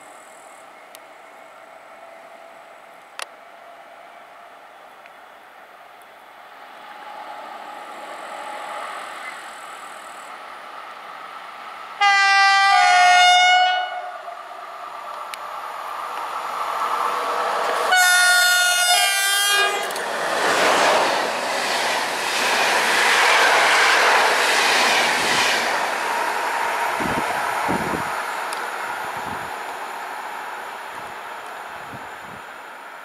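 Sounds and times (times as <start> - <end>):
train rumble and wheel clatter: 0.0 - 33.0
train air horn blasts: 12.0 - 14.3, 17.9 - 20.0.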